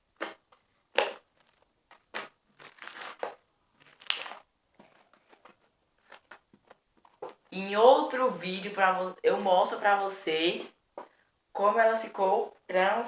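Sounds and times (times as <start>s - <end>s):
slime clicking and crackling: 0.2s - 4.4s.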